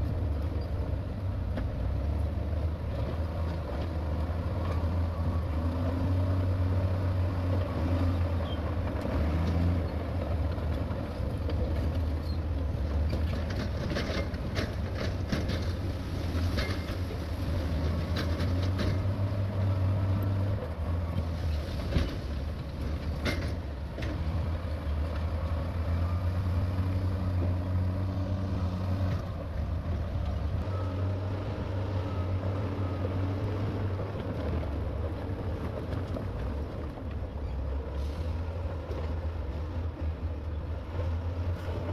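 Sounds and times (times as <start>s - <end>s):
diesel engine droning: 0.0s - 41.9s
metallic clanks and knocks: 23.0s - 24.3s.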